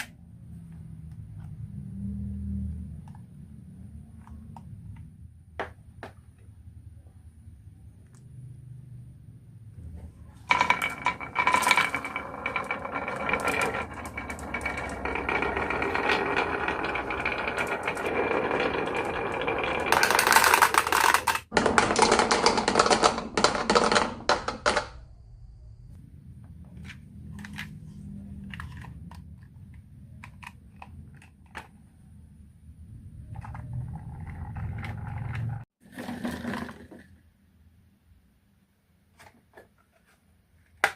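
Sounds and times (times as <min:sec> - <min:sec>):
marbles rattling down marble run: 0:10.5 - 0:24.9.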